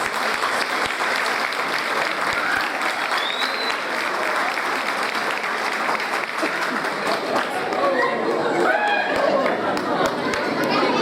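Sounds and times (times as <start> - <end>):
crowd applauding: 0.0 - 11.0
short high whistle: 3.1 - 3.8.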